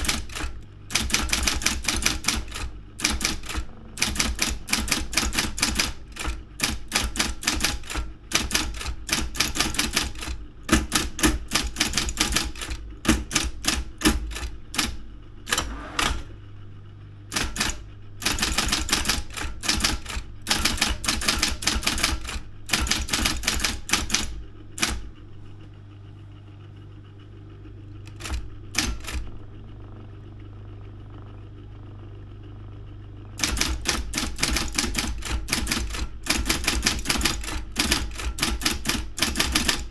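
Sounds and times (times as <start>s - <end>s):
typewriter key strikes: 0.0s - 16.3s, 17.3s - 25.1s, 28.1s - 29.3s, 33.4s - 39.9s
typewriter motor hum: 0.0s - 25.8s, 27.6s - 31.5s, 33.0s - 39.9s.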